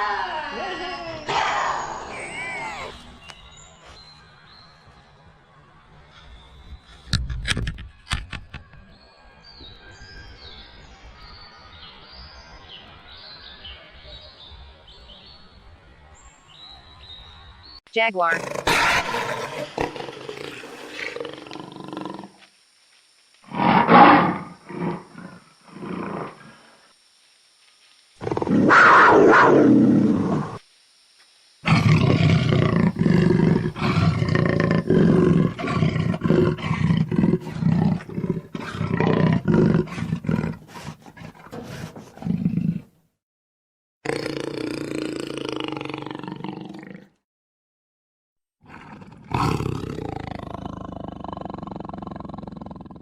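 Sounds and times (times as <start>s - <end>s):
jaguar roaring: 18.4s - 22.3s, 23.5s - 26.7s, 28.2s - 30.6s, 31.7s - 42.9s, 48.6s - 53.0s
jaguar rasping grunts: 31.7s - 42.9s.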